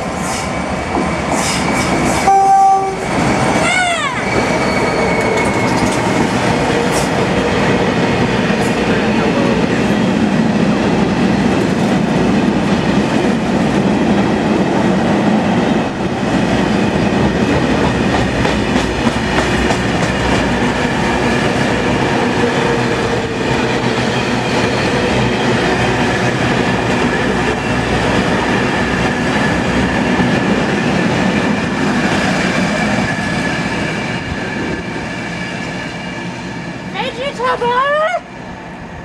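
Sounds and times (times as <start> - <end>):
clickety-clack of rails: 0.0 - 37.7
train running at speed: 0.0 - 39.0.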